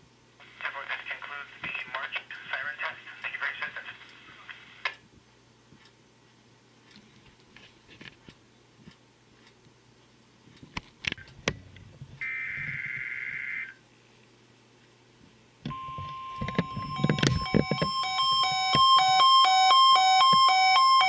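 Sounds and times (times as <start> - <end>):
steady warning alarm tone: 12.2 - 13.8, 15.7 - 21.0.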